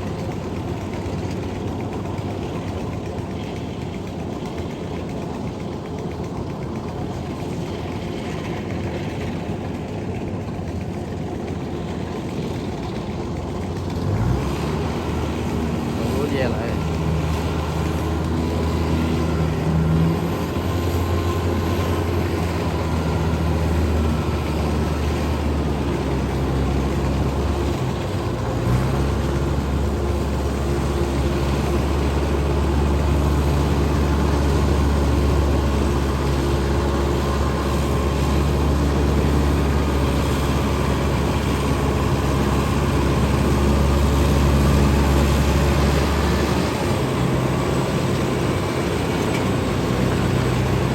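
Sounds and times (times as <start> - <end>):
combine harvester engine drone: 0.0 - 50.9.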